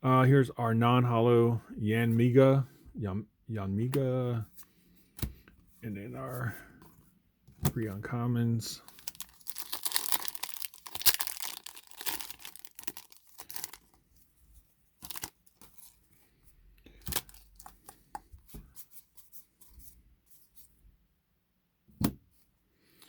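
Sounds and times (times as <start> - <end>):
foil wrapper crinkling and tearing: 8.8 - 14.0, 15.0 - 16.0.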